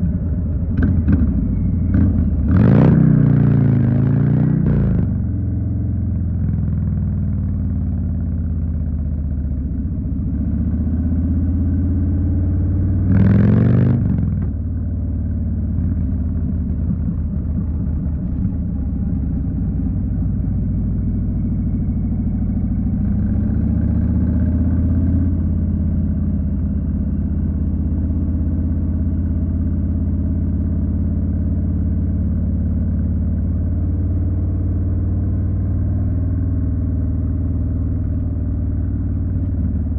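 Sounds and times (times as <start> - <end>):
motorcycle engine revving: 0.0 - 27.6.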